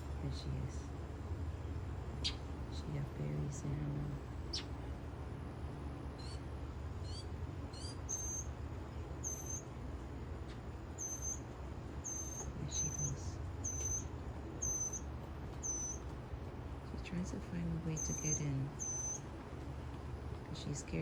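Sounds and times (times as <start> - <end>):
birds chirping: 0.0 - 21.0
steady low rumble: 0.0 - 21.0.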